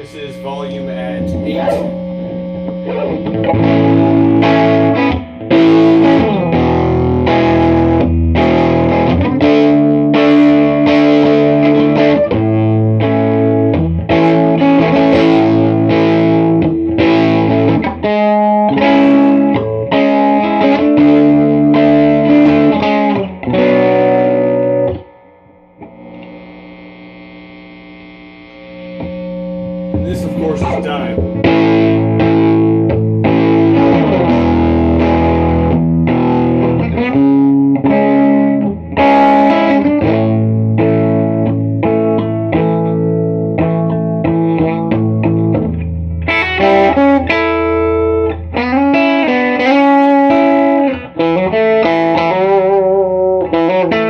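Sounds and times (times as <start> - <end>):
amplifier hiss and hum: 0.0 - 2.6, 25.4 - 31.4
electric guitar chords strummed: 0.0 - 54.0.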